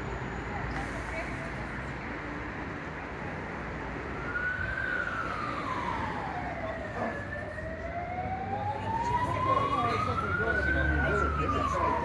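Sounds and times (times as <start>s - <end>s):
city traffic: 0.0s - 12.0s
emergency siren wailing: 4.2s - 12.0s.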